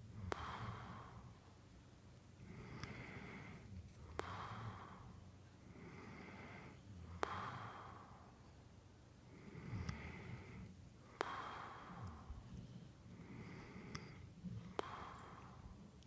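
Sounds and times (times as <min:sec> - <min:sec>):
breath out with click: 0:00.2 - 0:01.2, 0:02.5 - 0:05.2, 0:05.8 - 0:08.2, 0:09.3 - 0:15.8
man snoring: 0:02.5 - 0:03.6, 0:09.4 - 0:10.6.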